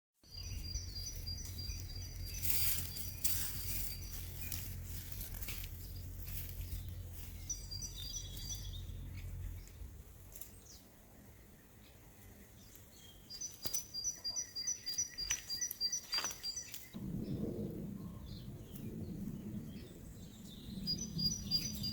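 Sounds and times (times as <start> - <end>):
low rumble: 0.4 - 10.4, 16.9 - 21.9
small bird high repeated calls: 13.2 - 17.0, 20.8 - 21.9.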